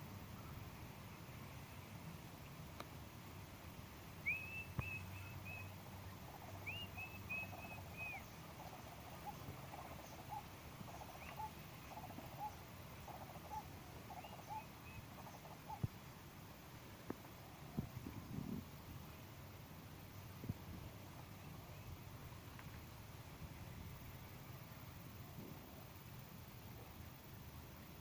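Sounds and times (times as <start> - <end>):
lower bird call repeating: 4.2 - 15.9.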